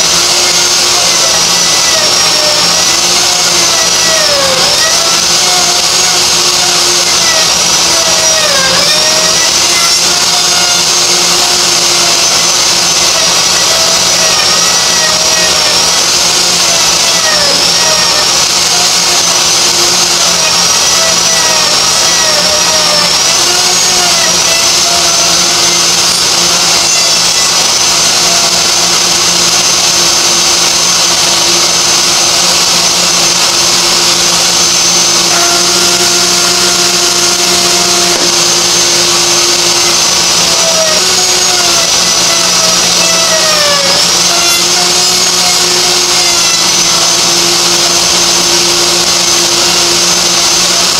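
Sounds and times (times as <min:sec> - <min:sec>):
dust collector running: 0:00.0 - 0:50.9
router motor whining: 0:00.0 - 0:50.9.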